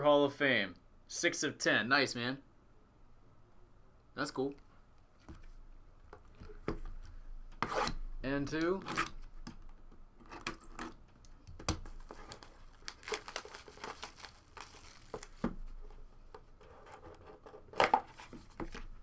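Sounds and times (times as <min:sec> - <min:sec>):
plastic wrapping crinkling and tearing: 0:12.0 - 0:15.5.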